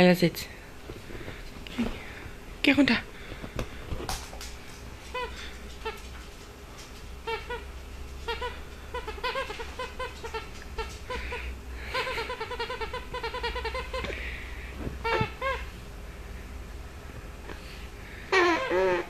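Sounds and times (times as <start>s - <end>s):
rubber squeaky toy squeaking: 8.2s - 10.9s, 11.9s - 14.0s, 15.0s - 15.7s, 18.4s - 19.0s.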